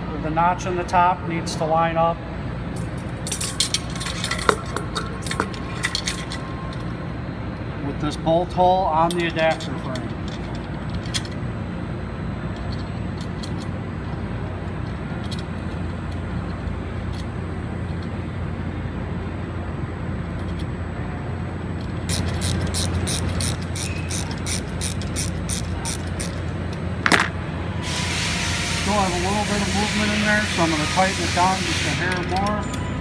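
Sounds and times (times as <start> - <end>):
low shop hum: 0.0 - 33.0
ratchet wrench clicking: 2.8 - 6.4, 22.1 - 27.4, 31.4 - 32.8
parts being handled clicks: 2.8 - 7.0, 9.1 - 11.4, 12.5 - 18.1, 20.2 - 20.7, 21.8 - 27.4, 32.0 - 32.9.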